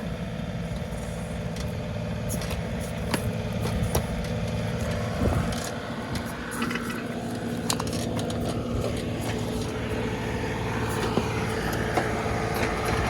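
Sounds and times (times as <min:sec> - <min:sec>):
tractor diesel engine running: 0:00.0 - 0:13.0
sharp cracks and scrapes: 0:00.8 - 0:10.1.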